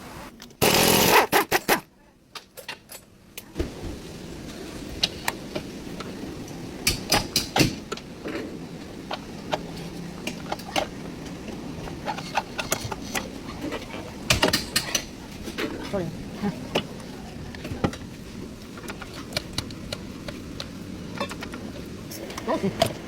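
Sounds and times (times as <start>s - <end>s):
tools knocking and clicking: 14.3s - 15.1s.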